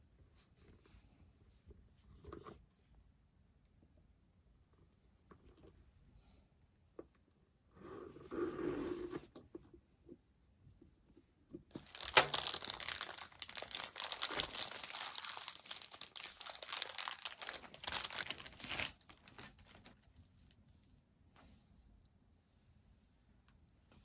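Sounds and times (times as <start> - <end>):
packaging crinkling and tearing: 11.8 - 20.2.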